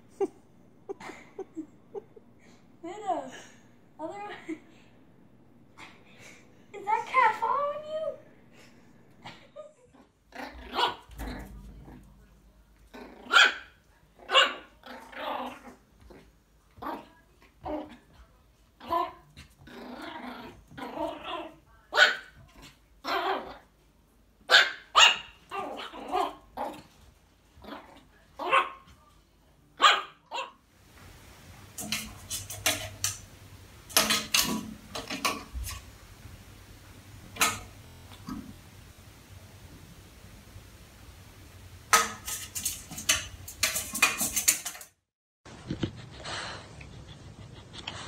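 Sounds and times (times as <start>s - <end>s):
dog barking and growling: 0.0s - 18.2s, 18.8s - 23.7s, 24.4s - 27.0s, 27.6s - 28.9s, 29.8s - 30.6s
low steady hum: 0.0s - 24.4s.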